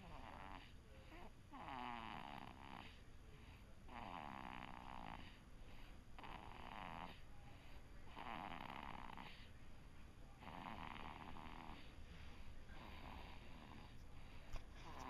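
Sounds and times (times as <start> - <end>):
soft rasping snores: 0.0 - 3.0, 3.9 - 5.4, 6.2 - 7.2, 8.1 - 9.5, 10.4 - 11.9, 12.8 - 14.0, 14.8 - 15.0.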